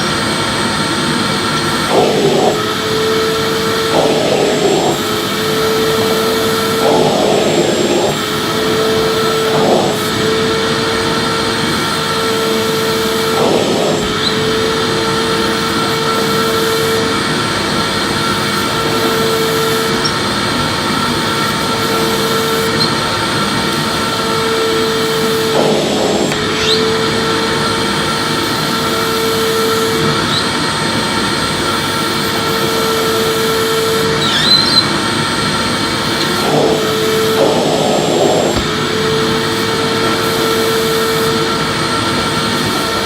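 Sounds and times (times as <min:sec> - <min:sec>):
vacuum cleaner whining: 0:00.0 - 0:43.0
vacuum nozzle swept over floor: 0:01.7 - 0:11.7.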